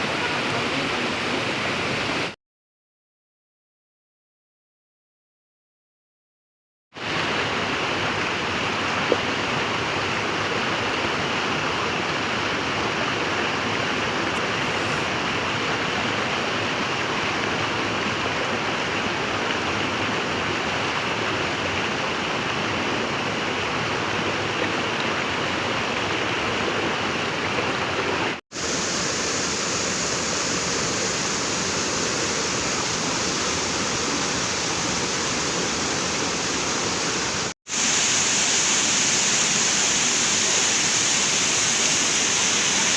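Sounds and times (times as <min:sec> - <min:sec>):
waterfall rushing: 0:00.0 - 0:02.4, 0:07.0 - 0:42.9.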